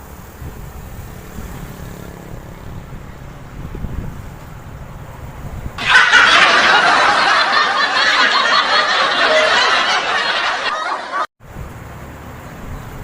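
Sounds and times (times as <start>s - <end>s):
crowd laughing loudly: 5.8s - 11.3s.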